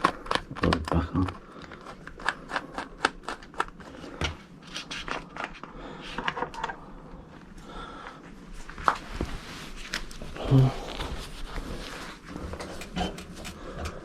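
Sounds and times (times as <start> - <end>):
rubbing and rustling: 8.4 - 13.6.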